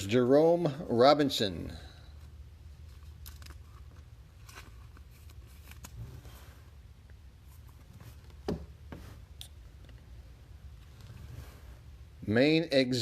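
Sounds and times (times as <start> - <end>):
low room hum: 0.0 - 13.0
trading cards rustling in plastic sleeves: 2.2 - 6.8.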